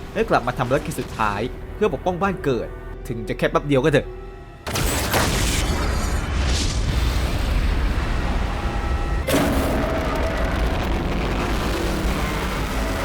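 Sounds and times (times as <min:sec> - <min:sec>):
explosion boom: 0:04.8 - 0:08.6, 0:09.3 - 0:13.0.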